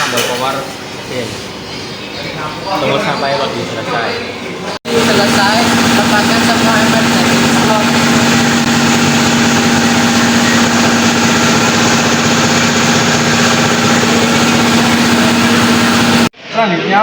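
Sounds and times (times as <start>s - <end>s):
air compressor running: 4.4s - 16.3s.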